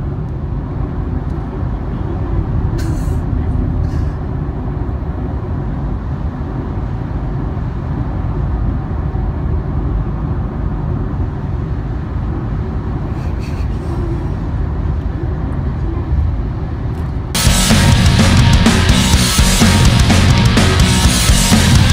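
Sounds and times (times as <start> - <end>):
road and tyre rumble in car: 0.0 - 17.4
loud rock music: 17.4 - 21.9.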